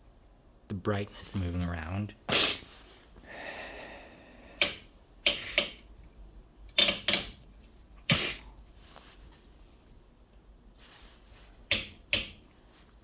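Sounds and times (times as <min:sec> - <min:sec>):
switches and knobs clicking: 0:04.6 - 0:08.3, 0:11.6 - 0:12.6.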